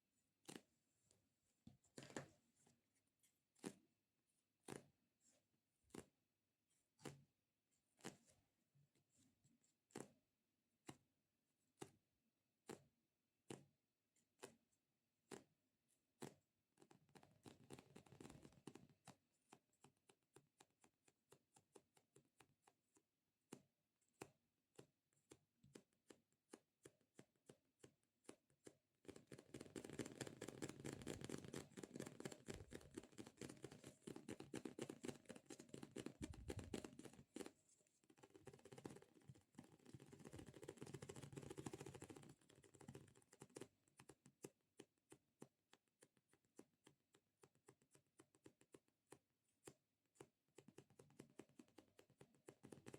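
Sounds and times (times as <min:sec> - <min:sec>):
fingertips tapping sticky toy: 0:28.6 - 0:48.8.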